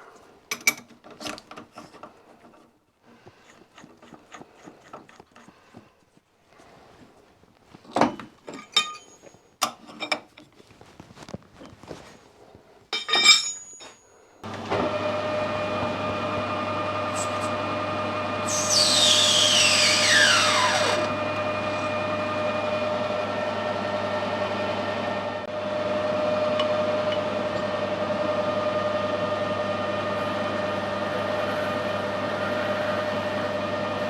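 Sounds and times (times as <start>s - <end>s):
loud cutting whine: 14.4s - 34.0s
metalworking machine humming: 14.4s - 34.0s.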